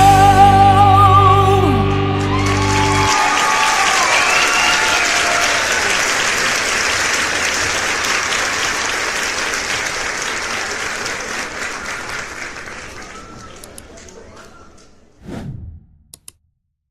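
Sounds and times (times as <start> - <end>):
large audience applauding: 2.0 - 14.6.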